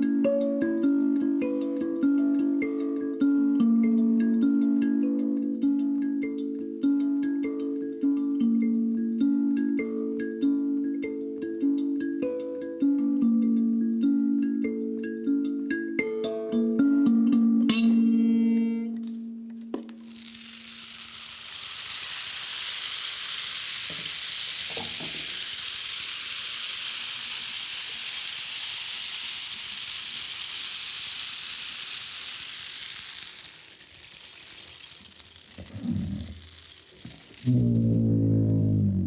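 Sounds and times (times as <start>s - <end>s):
steady high hiss: 0.0s - 39.0s
brief low pitched sounds: 37.5s - 39.0s.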